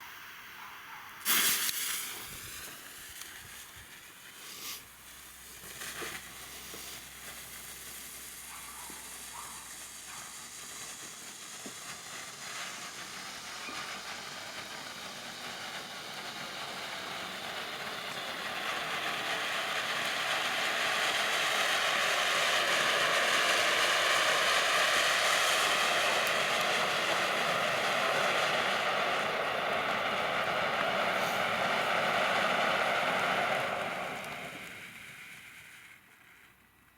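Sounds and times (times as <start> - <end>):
firework fountain hissing: 0.0 - 36.9
firework pops: 1.2 - 16.9.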